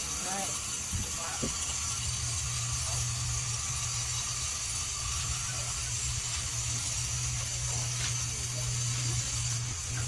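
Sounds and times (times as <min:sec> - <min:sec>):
steady hiss: 0:00.0 - 0:10.0.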